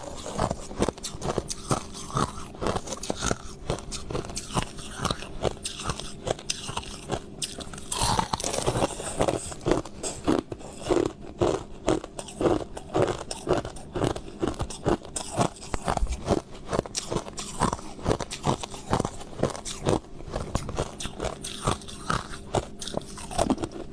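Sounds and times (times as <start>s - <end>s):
chewing crushed ice: 0.0s - 23.9s.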